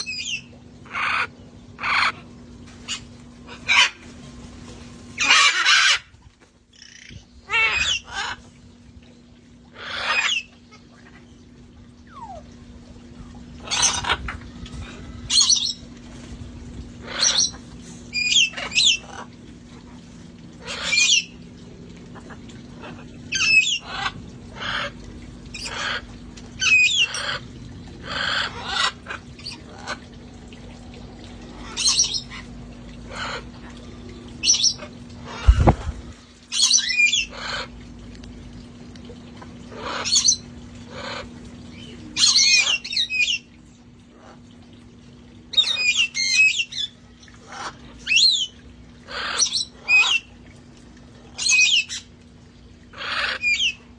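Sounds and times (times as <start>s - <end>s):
parrots squawking: 0.0s - 2.2s, 2.9s - 4.0s, 5.2s - 6.1s, 6.8s - 8.4s, 9.8s - 11.0s, 13.6s - 15.8s, 17.0s - 19.3s, 20.6s - 21.3s, 22.2s - 27.4s, 28.0s - 30.0s, 33.1s - 33.6s, 34.4s - 35.9s, 36.5s - 37.7s, 39.7s - 43.5s, 45.5s - 50.3s, 51.4s - 52.0s, 52.9s - 53.8s
low steady hum: 0.0s - 53.9s.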